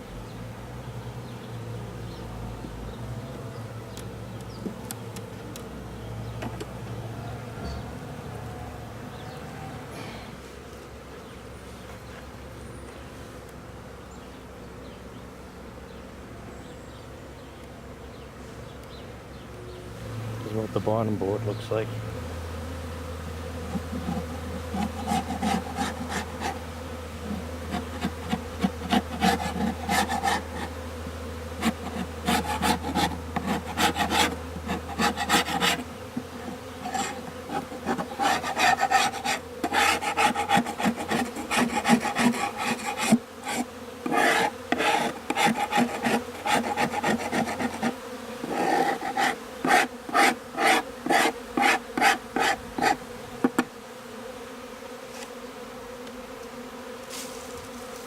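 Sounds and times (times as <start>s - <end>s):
honeybees buzzing: 0.0s - 58.0s
scraping wooden board: 23.7s - 26.6s, 27.3s - 30.8s, 31.6s - 53.7s.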